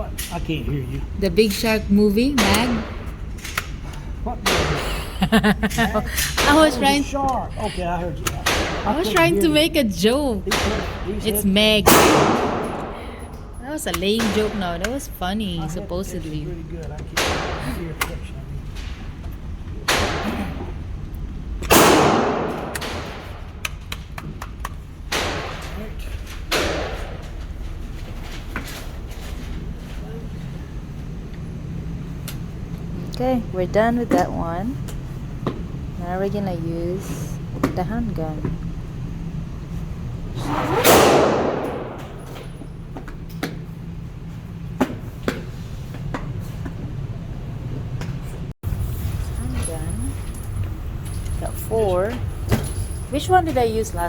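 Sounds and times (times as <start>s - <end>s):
steady low hum: 0.0s - 54.0s
gunshots with echoing tail: 11.8s - 13.5s, 21.7s - 23.4s, 40.8s - 42.2s
loud bang: 11.8s - 13.5s.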